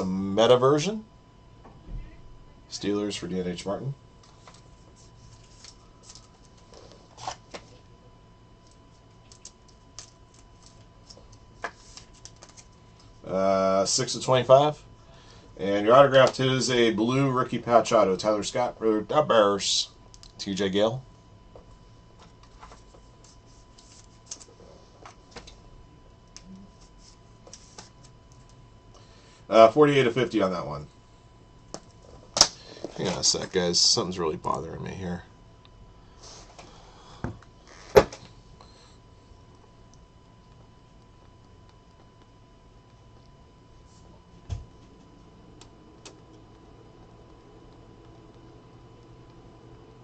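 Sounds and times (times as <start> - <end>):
trading cards clicking and rustling: 8.7 - 13.1.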